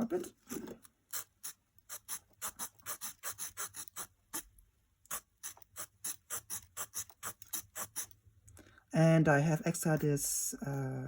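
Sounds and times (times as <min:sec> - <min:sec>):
saw blade sawing wood: 0:01.1 - 0:04.1.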